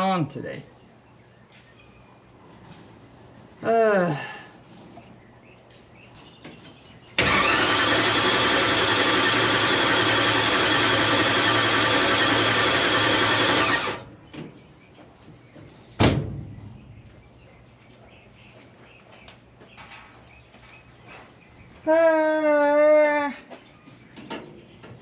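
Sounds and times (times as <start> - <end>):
engine cranking by starter motor: 7.2 - 14.2.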